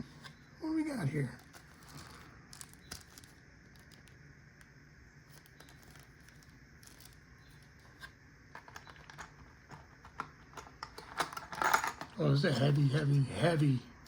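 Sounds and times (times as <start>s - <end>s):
packaging rustling: 1.4s - 7.8s.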